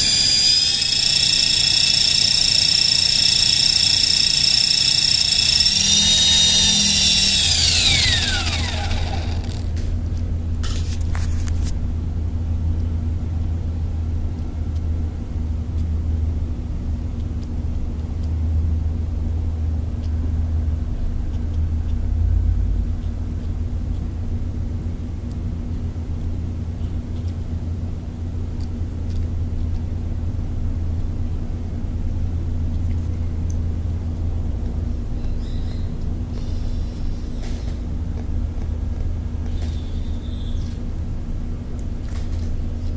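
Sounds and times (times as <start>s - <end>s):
electric motor whine spinning down: 0.0s - 9.9s
steady low rumble: 4.4s - 42.9s.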